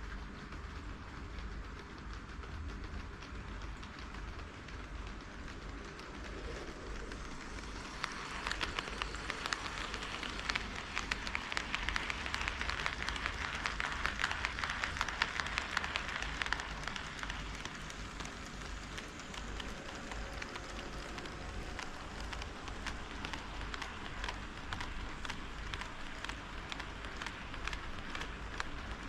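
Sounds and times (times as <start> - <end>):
model train wheels clicking: 0.0 - 29.0.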